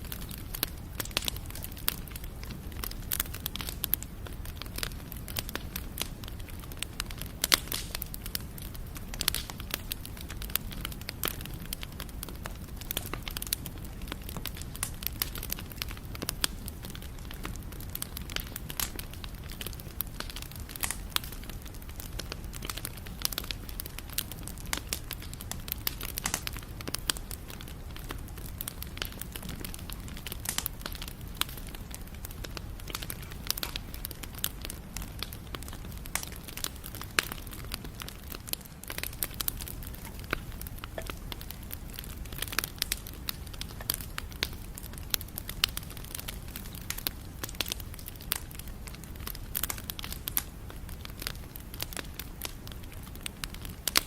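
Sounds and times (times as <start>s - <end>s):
low rumble of flames: 0.0s - 54.0s
wood crackling and popping: 0.0s - 54.0s.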